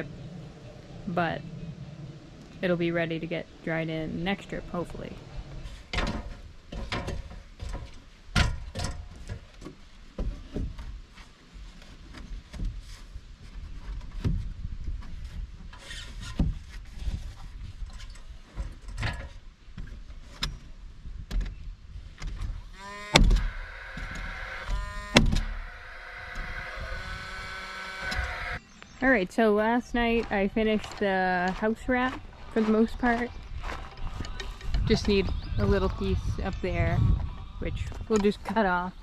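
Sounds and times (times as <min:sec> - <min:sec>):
knocks and clatter of building work: 0:05.9 - 0:20.6
steady whine: 0:22.7 - 0:30.8.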